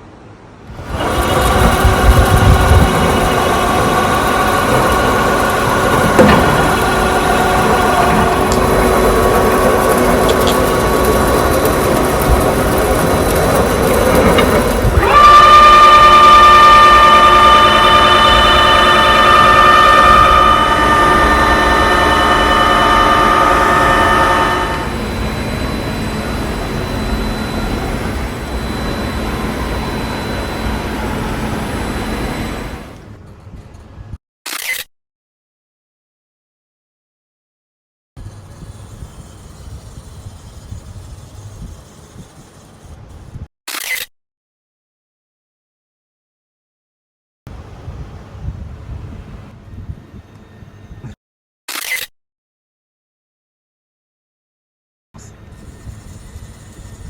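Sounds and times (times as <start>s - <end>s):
drilling machine hum: 0.7s - 33.2s.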